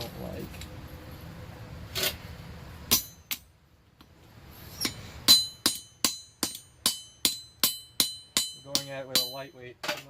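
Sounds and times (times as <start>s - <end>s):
hammer striking steel block: 2.9s - 4.1s, 4.8s - 10.0s.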